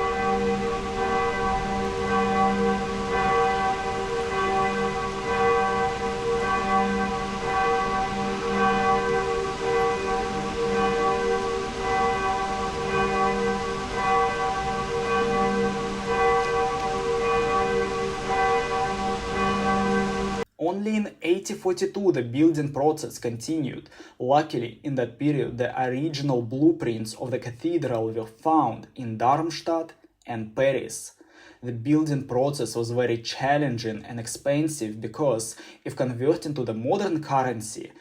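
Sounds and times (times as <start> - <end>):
large church bells pealing: 0.0 - 20.5.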